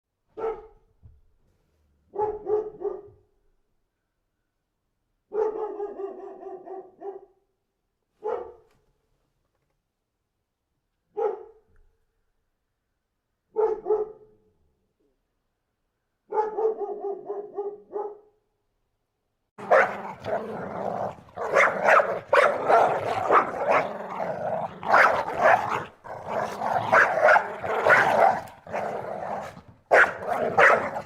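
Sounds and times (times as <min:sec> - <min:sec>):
dog barking: 0:00.3 - 0:00.9, 0:02.1 - 0:03.2, 0:05.3 - 0:07.4, 0:08.2 - 0:08.7, 0:11.1 - 0:11.7, 0:13.5 - 0:14.4, 0:16.3 - 0:18.4, 0:19.6 - 0:31.0.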